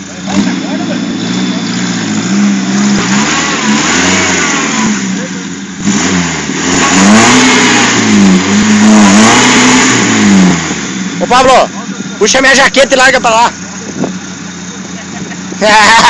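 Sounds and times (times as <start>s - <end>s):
engine revving hard: 0.0s - 11.7s.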